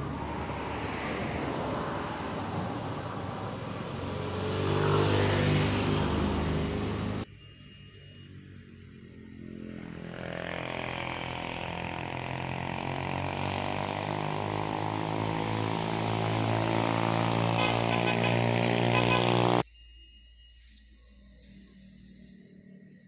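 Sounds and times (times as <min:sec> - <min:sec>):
vehicle engine running: 0:00.0 - 0:07.2, 0:09.7 - 0:19.6.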